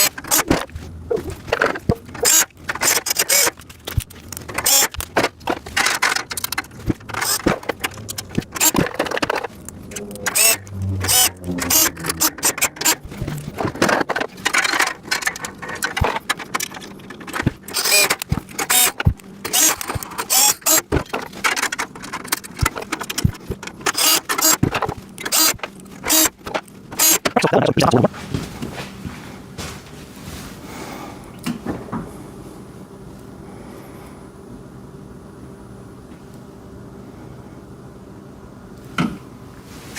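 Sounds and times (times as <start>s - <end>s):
metal rack parts clanking: 1.4s - 20.4s.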